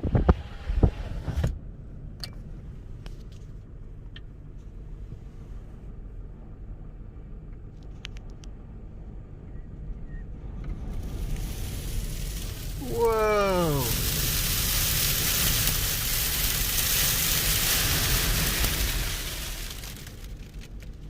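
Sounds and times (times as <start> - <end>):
low wind rumble: 0.0 - 21.0
faint ticks and rattles: 13.5 - 21.0.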